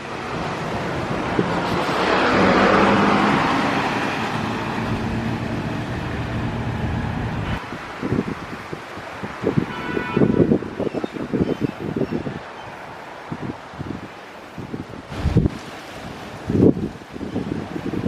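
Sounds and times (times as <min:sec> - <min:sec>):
vehicle passing: 0:00.1 - 0:07.6.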